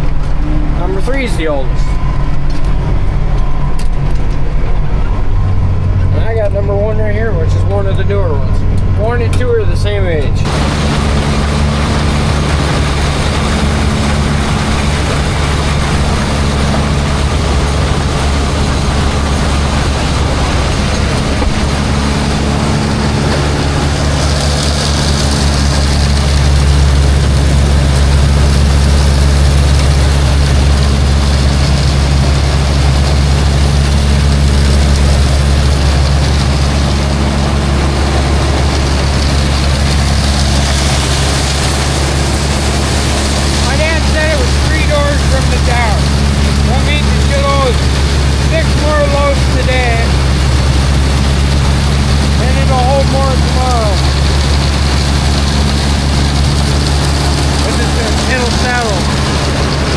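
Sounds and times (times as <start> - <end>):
tractor diesel engine running: 0.0 - 59.9.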